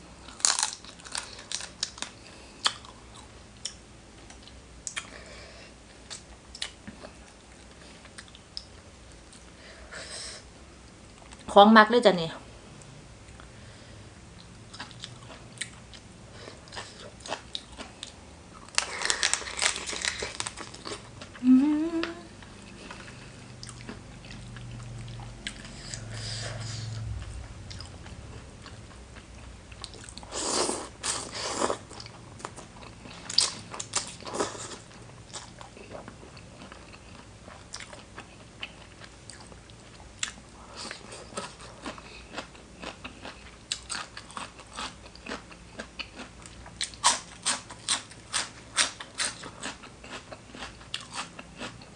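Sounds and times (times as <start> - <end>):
crunchy food being chewed: 0.2 - 5.2, 14.7 - 21.4, 22.4 - 51.9.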